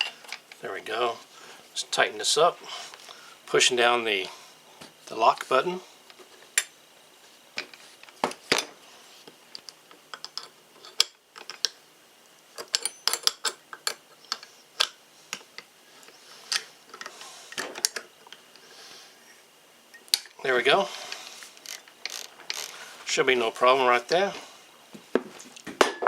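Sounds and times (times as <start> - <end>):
clicks and light metal knocks: 9.3 - 11.8.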